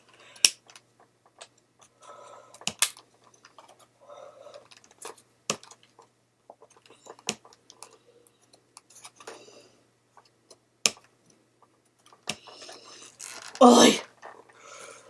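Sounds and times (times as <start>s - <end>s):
plastic packaging clicks and snaps: 2.6s - 3.0s
scratchy plastic rustling: 11.6s - 14.6s.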